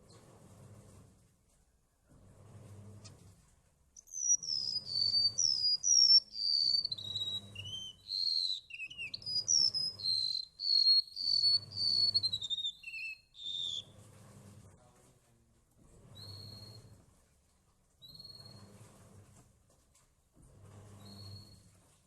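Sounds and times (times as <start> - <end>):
bird singing whistled notes: 4.0 - 13.9.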